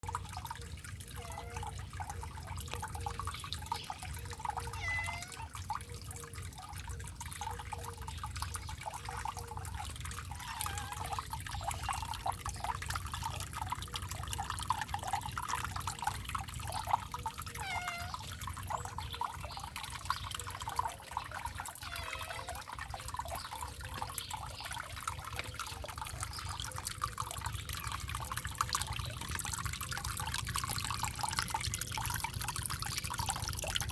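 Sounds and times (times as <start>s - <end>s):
water fountain trickling: 0.0s - 33.9s
cat meowing: 1.2s - 1.7s, 4.6s - 5.6s, 10.3s - 11.2s, 17.6s - 18.3s, 21.8s - 22.6s.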